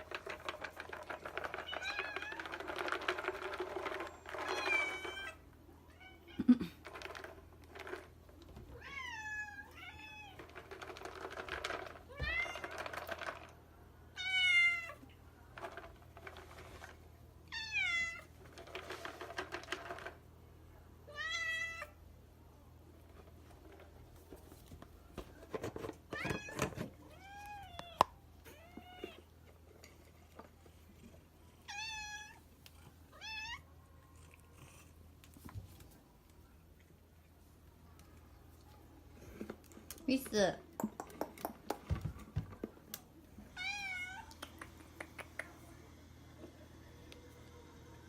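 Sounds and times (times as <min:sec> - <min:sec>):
cats meowing: 0:31.6 - 0:34.6.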